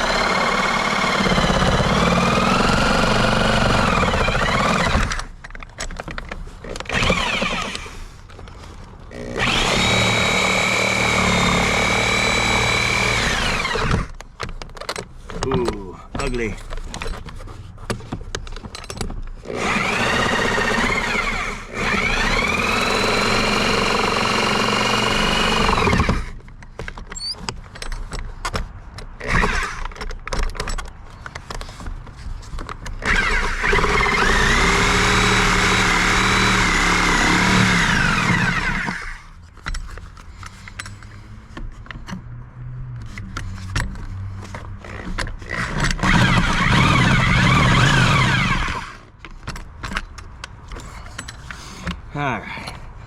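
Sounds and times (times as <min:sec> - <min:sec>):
reciprocating saw cutting wood: 0:00.0 - 0:05.3, 0:06.8 - 0:08.0, 0:09.2 - 0:14.2, 0:19.5 - 0:26.4, 0:29.2 - 0:29.8, 0:33.0 - 0:39.3, 0:44.8 - 0:49.0
knocks and clatter of wood: 0:13.7 - 0:19.5.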